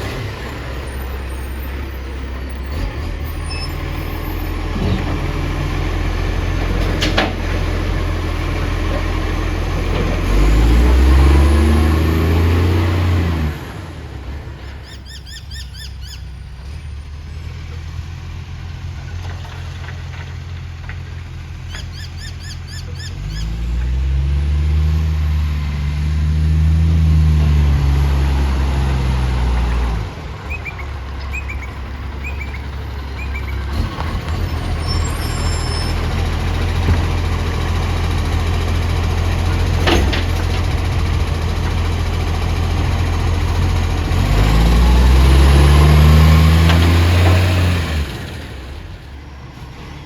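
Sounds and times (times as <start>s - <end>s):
bus engine with exhaust leak: 0.0s - 50.0s
birds chirping: 14.8s - 16.5s, 21.7s - 23.6s, 29.7s - 33.7s.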